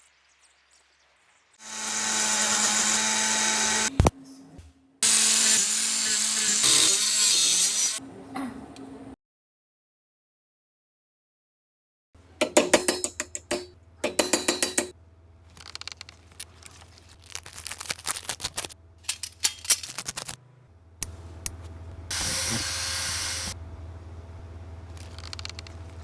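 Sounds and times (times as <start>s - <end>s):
objects clicking and rattling: 12.4s - 14.9s, 15.6s - 20.4s.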